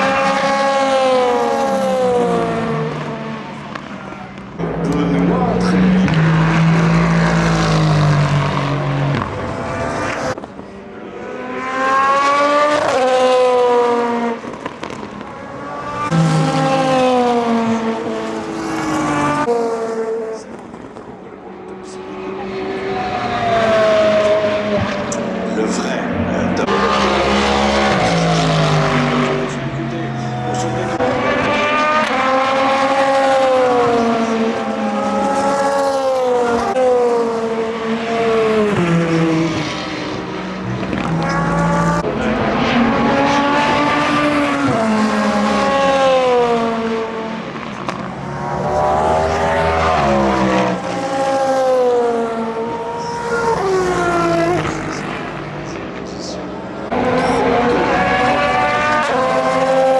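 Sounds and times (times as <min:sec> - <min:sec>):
race car engines passing: 0:00.0 - 0:59.9.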